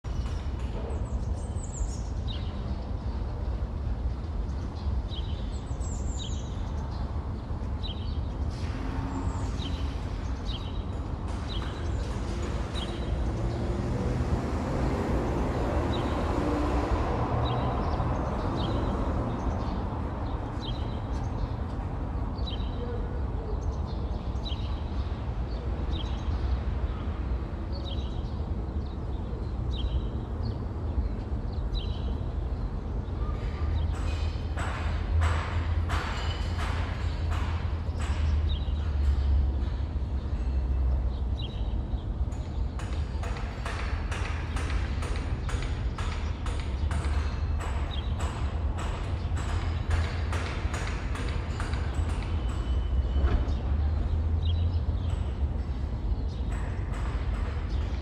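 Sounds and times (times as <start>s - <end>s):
distant traffic rumble: 0.0s - 58.0s
passing vehicle: 12.3s - 19.3s.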